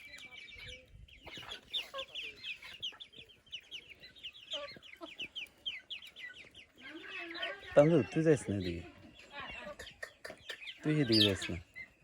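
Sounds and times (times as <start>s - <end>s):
chickens calling: 0.0s - 12.0s.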